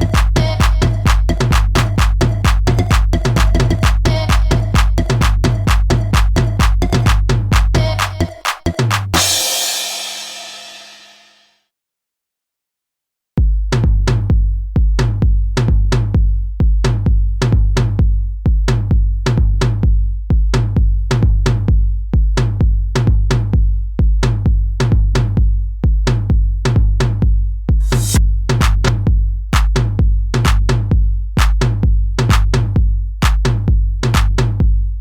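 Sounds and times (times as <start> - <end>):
electronic music with drum-machine beat: 0.0 - 9.4, 27.8 - 29.0, 29.6 - 29.8, 30.4 - 30.8, 31.4 - 32.6, 33.2 - 34.4.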